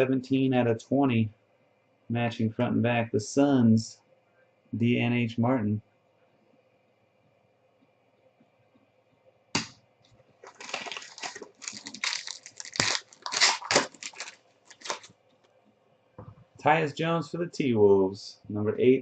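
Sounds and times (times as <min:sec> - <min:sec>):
card pack wrapper tearing and crinkling: 0:10.4 - 0:15.1.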